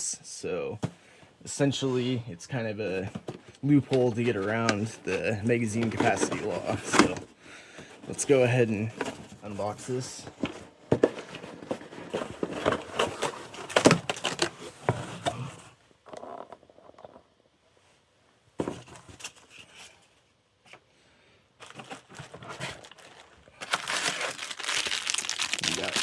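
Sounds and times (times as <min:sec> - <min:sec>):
packaging clicks and knocks: 0:03.2 - 0:07.2
plastic wrapping crinkling: 0:21.6 - 0:26.0.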